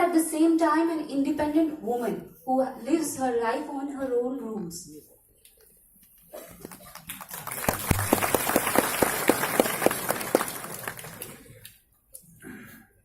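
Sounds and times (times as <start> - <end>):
audience applauding: 6.5 - 11.6.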